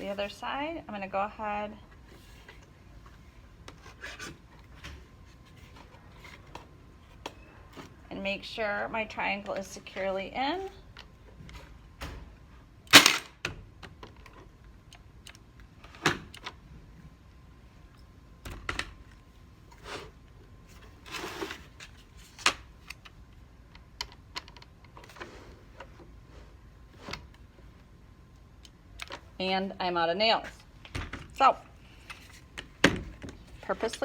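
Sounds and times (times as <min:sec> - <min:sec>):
nailer firing into wood: 0:12.9 - 0:13.4.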